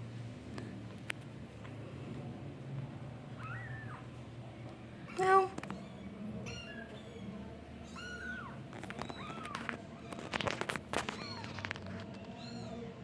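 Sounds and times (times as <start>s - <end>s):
sharp clicks and rustles: 8.7s - 12.5s.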